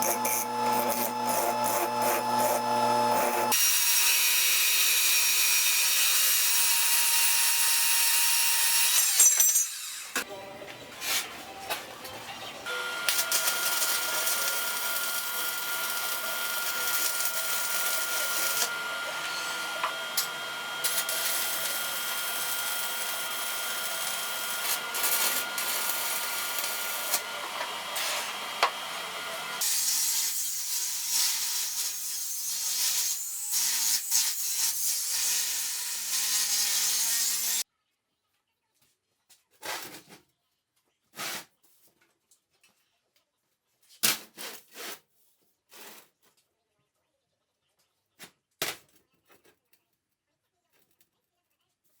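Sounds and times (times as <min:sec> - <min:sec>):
machine motor whine: 0:00.0 - 0:03.5, 0:12.7 - 0:29.6
grinding steel: 0:00.0 - 0:07.1, 0:12.7 - 0:30.4.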